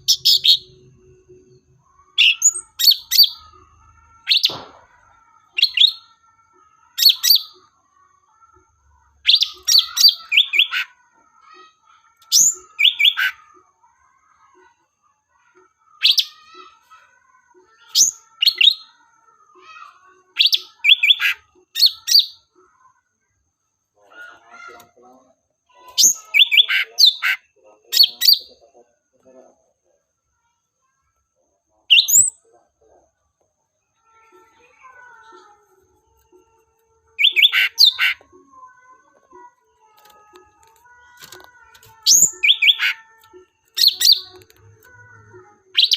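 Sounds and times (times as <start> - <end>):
songbird sharp high chirps: 42.0 - 43.0.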